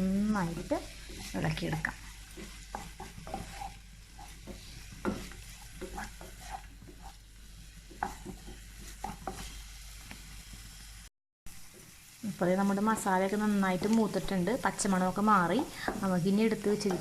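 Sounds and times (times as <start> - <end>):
food sizzling in a pan: 0.0 - 17.0
utensil scraping a pan: 0.5 - 7.2, 7.9 - 9.6.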